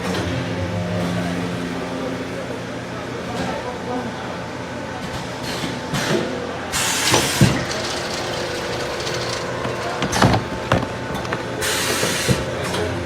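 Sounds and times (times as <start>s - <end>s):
packaging machine humming: 4.9s - 12.9s
air hissing: 6.7s - 8.0s.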